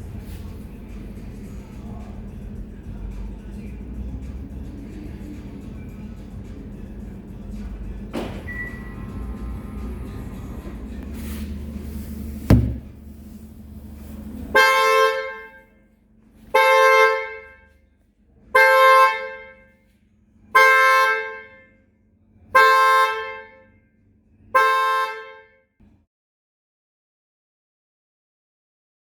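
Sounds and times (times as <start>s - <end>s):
sharp knock: 12.5s - 13.0s
car horn honking: 14.5s - 15.6s, 16.5s - 17.8s, 18.6s - 19.7s, 20.6s - 21.7s, 22.6s - 23.8s, 24.6s - 25.6s.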